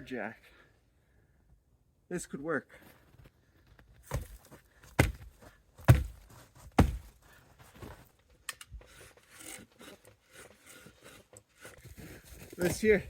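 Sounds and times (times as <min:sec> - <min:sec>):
rustling and scraping: 0:03.0 - 0:13.0
heavy thuds: 0:04.1 - 0:07.2.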